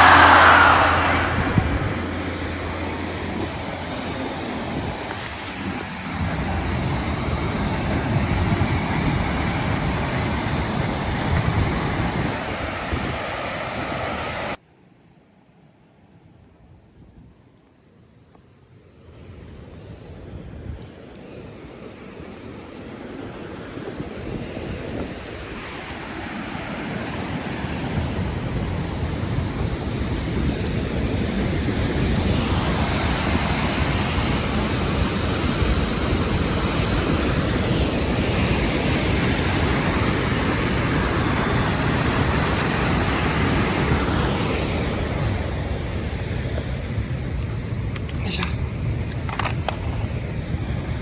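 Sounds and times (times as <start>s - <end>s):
waterfall roaring: 0.0s - 4.3s.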